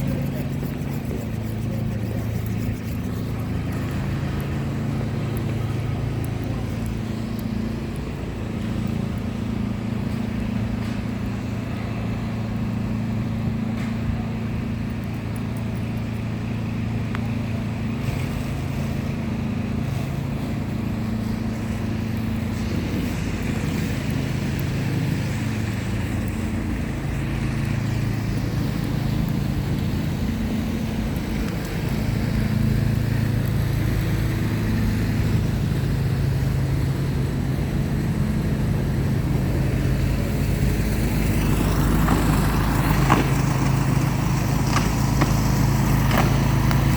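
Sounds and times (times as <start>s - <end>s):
outdoor street noise: 0.0s - 46.9s
vehicle engine running: 0.0s - 46.9s.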